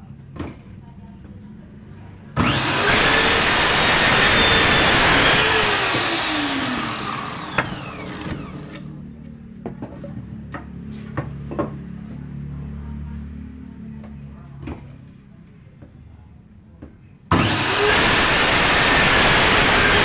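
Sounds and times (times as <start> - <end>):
miter saw cutting board: 2.4 - 8.8, 17.3 - 20.0.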